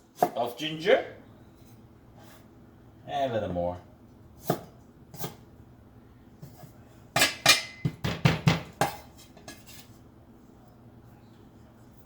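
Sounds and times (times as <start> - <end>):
utensils and dishes clattering: 7.2 - 9.9.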